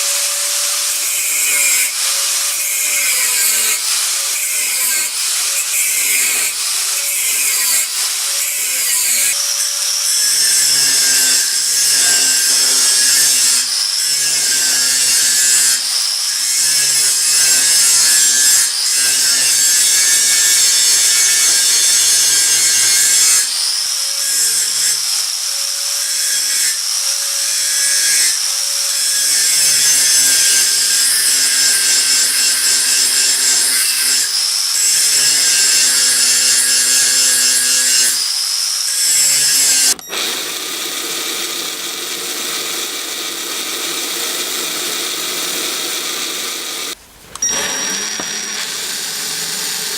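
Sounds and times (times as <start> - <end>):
abrasive sanding or grinding: 39.2 - 49.9.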